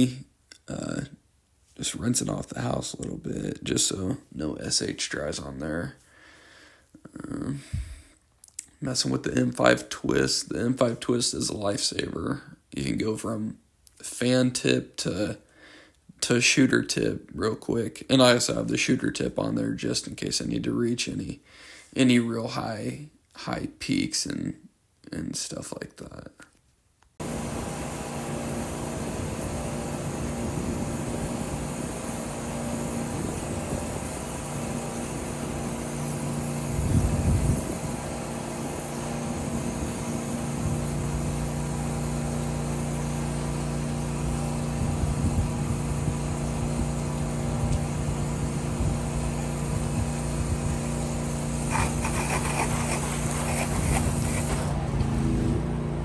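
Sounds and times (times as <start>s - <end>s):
pressure washer engine running: 27.2s - 56.0s.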